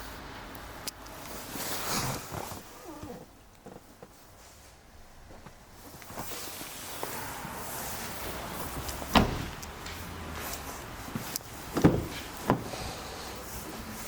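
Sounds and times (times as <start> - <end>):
car door clunks: 8.8 - 9.8, 11.7 - 12.7.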